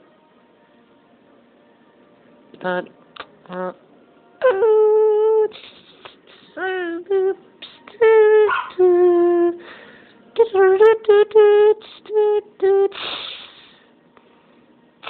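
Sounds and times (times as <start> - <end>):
man humming a tune: 4.4 - 9.6
breathy hiss: 5.5 - 6.6, 12.9 - 14.6.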